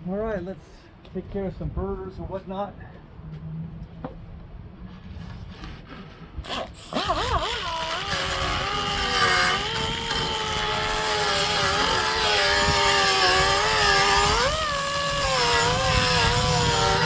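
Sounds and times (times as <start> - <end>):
high-speed power tool whining: 6.4 - 17.0.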